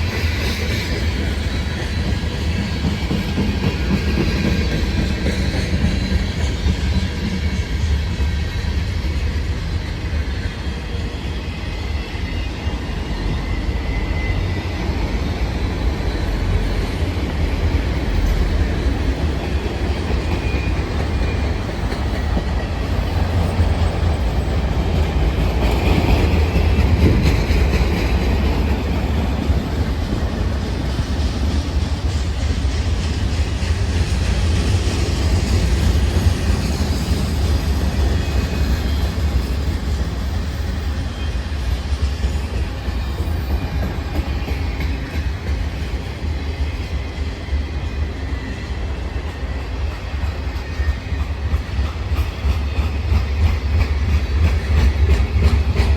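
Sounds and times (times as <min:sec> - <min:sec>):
freight train cars rolling past: 0:00.0 - 0:55.9
steel wheels clacking over rail joints: 0:15.6 - 0:40.9, 0:49.0 - 0:55.9.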